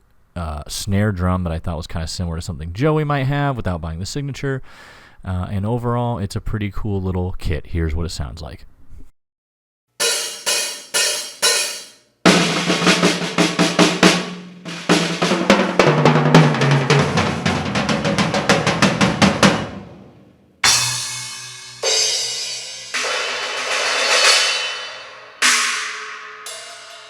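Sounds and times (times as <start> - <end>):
cymbal crash: 10.0 - 12.7, 19.3 - 27.0
drum kit playing: 10.0 - 27.0.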